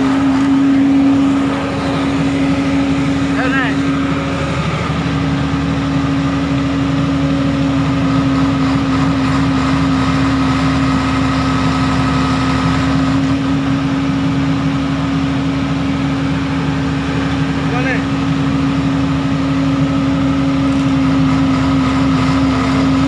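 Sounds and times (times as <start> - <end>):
diesel generator running: 0.0 - 23.0.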